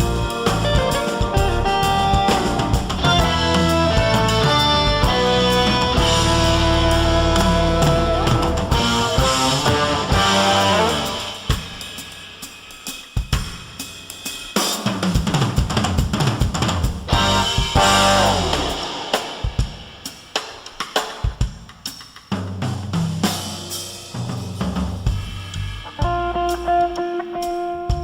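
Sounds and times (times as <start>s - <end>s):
held guitar notes: 0.0s - 11.4s, 17.1s - 18.9s
band music with drum kit: 0.0s - 28.0s.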